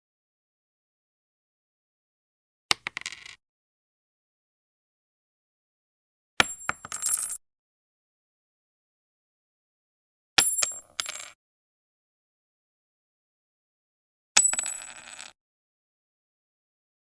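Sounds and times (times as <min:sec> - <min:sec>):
coin dropping and bouncing: 0:02.7 - 0:03.4, 0:06.4 - 0:07.4, 0:10.4 - 0:11.4, 0:14.4 - 0:15.4.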